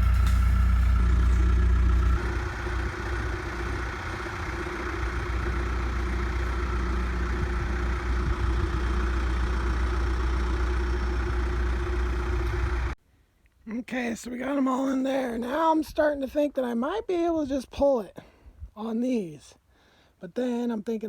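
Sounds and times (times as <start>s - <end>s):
backhoe diesel engine running: 0.0s - 13.0s.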